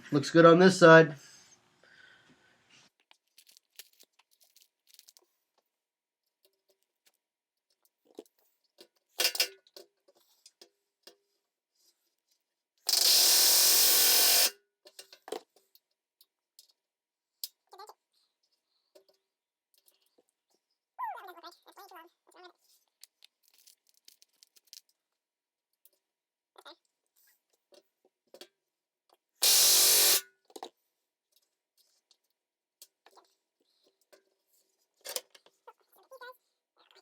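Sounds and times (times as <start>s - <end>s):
tools and rivets clicking: 8.8s - 11.2s, 29.4s - 30.6s
pneumatic rivet gun bursts: 12.9s - 14.6s, 29.4s - 30.2s.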